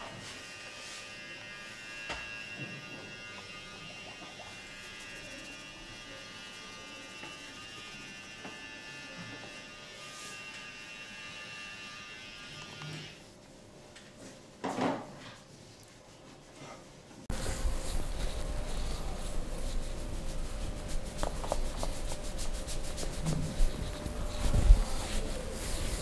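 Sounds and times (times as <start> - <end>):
small electric motor buzzing: 0.4 - 13.2.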